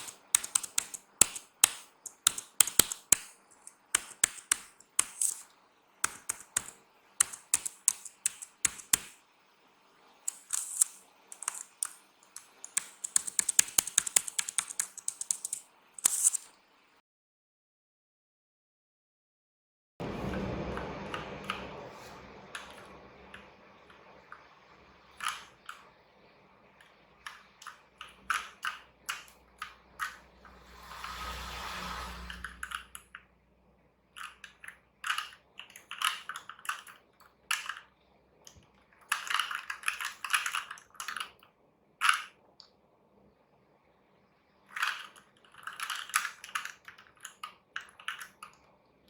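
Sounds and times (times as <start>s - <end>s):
mechanical keyboard keys clacking: 0.0s - 9.2s, 10.3s - 16.5s, 34.2s - 37.8s, 39.1s - 41.4s.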